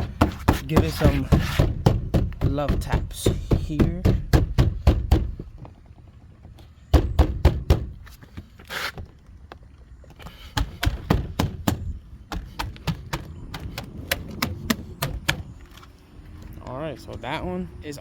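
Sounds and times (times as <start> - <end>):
hand knocking on door panel: 0.0 - 5.5, 6.9 - 8.0, 10.6 - 15.5.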